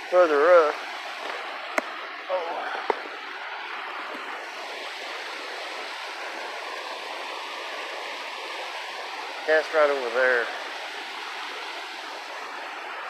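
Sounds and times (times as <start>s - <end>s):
creek water rushing over rocks: 0.0s - 13.0s.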